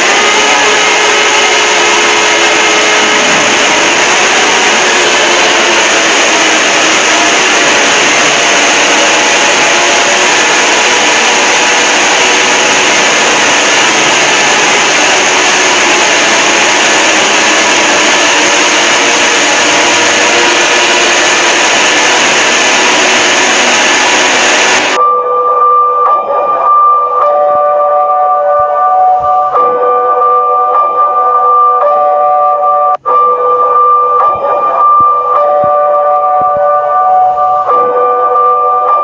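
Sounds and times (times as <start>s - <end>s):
clean steady tones: 0.0s - 39.0s
distorted emergency alert alarm: 0.0s - 39.0s.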